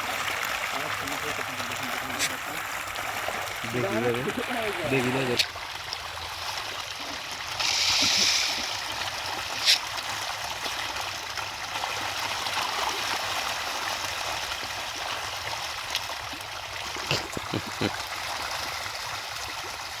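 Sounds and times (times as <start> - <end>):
water running steadily: 0.0 - 20.0
hissing surge of water: 7.4 - 10.2.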